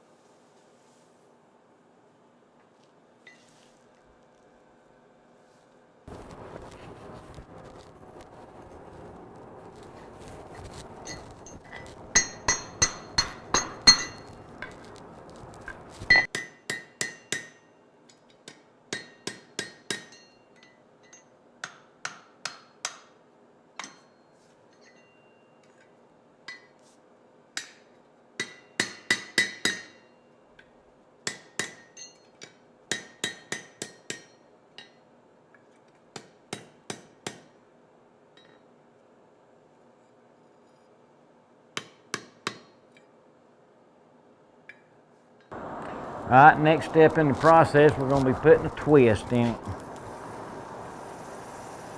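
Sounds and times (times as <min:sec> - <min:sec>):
rushing noise: 0:06.1 - 0:12.6, 0:45.5 - 0:51.9
hammer striking steel on anvil: 0:11.1 - 0:14.8, 0:16.1 - 0:17.8, 0:18.4 - 0:23.2, 0:23.8 - 0:24.2, 0:27.6 - 0:30.2, 0:31.2 - 0:35.0, 0:36.1 - 0:37.6, 0:41.8 - 0:42.8.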